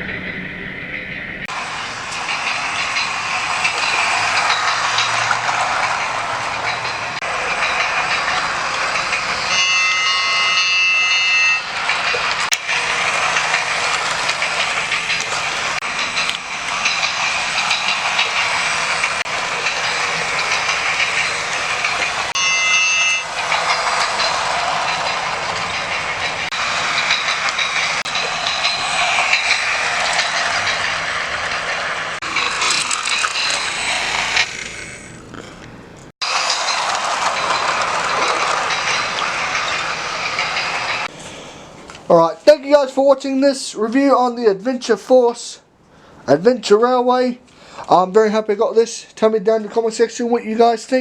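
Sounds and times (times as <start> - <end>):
toy train running on track: 1.4 - 35.6, 36.2 - 45.6, 46.6 - 51.0
hissing steam sound effect: 1.5 - 35.5, 36.2 - 42.3
electronic train whistle: 9.4 - 12.7, 22.3 - 23.4
scattered clicks: 12.0 - 22.4.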